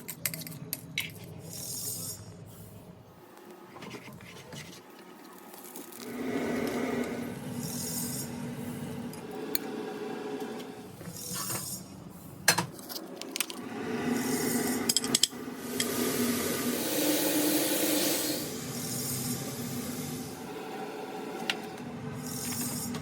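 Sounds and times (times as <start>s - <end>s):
hiss: 13.7s - 14.9s, 15.6s - 23.0s.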